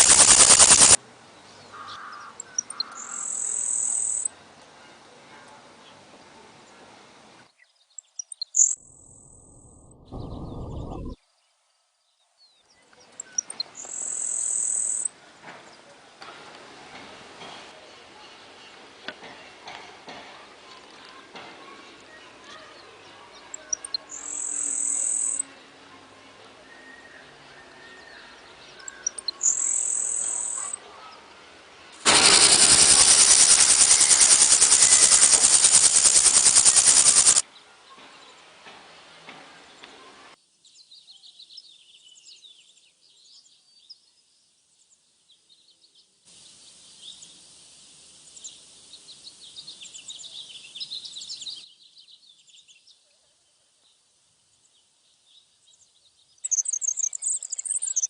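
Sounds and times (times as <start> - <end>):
grasshopper rasping buzz: 0.0 - 1.0, 32.0 - 37.4
high-pitched chirping: 0.0 - 1.0, 8.3 - 11.2, 32.1 - 37.4, 56.5 - 58.0
loud high chirp: 0.0 - 1.0, 2.5 - 4.3, 8.0 - 11.2, 13.2 - 15.1, 23.5 - 25.4, 28.8 - 30.8, 32.0 - 37.4, 56.4 - 58.0.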